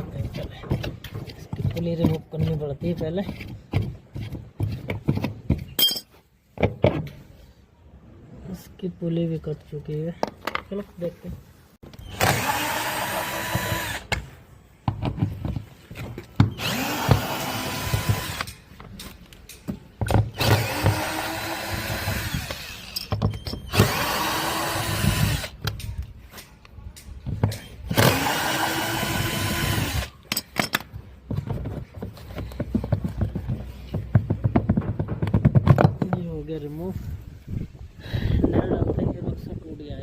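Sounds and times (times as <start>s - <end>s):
electric drill-driver spinning: 16.6s - 18.5s, 20.4s - 23.1s
handling clicks and knocks: 30.2s - 36.4s.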